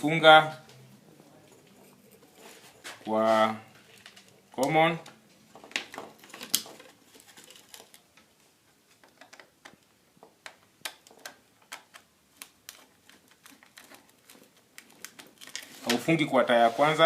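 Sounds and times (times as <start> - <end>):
clicks and taps of wiring: 8.9 - 16.0.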